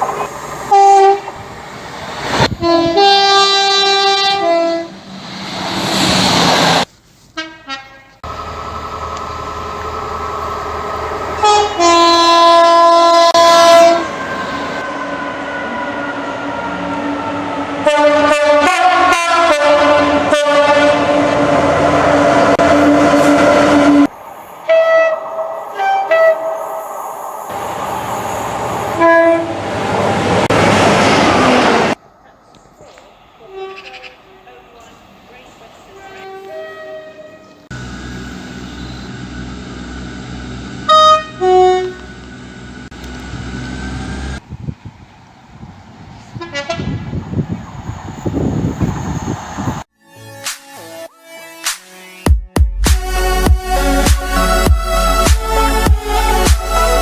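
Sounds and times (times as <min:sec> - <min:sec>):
train passing by: 0:00.0 - 0:49.9
train horns tooting: 0:00.7 - 0:01.5, 0:02.4 - 0:05.0, 0:07.4 - 0:08.4, 0:11.3 - 0:26.6, 0:28.9 - 0:30.5, 0:33.4 - 0:40.1, 0:40.7 - 0:42.4, 0:46.4 - 0:47.0.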